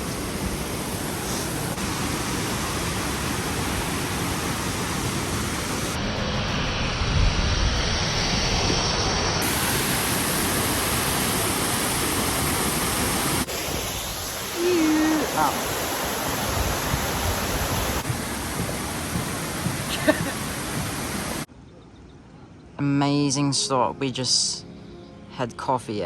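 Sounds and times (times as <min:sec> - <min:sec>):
fast-flowing river rushing: 0:00.0 - 0:06.0, 0:09.4 - 0:21.5.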